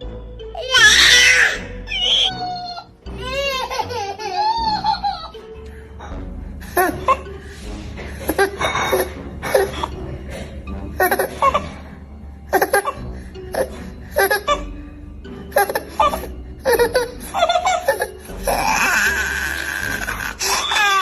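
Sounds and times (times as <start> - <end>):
baby laughing: 0.6 - 5.5, 8.2 - 10.0, 11.0 - 11.8, 12.5 - 14.8, 15.5 - 21.0.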